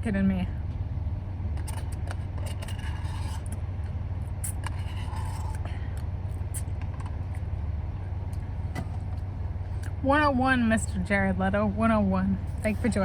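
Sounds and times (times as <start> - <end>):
steady low rumble: 0.0 - 13.0
spoon scraping a cup: 1.6 - 3.6, 4.4 - 5.7.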